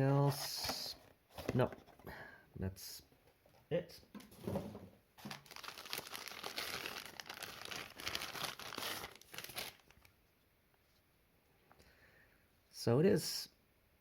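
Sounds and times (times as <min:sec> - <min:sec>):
packaging crinkling: 0:05.2 - 0:10.1.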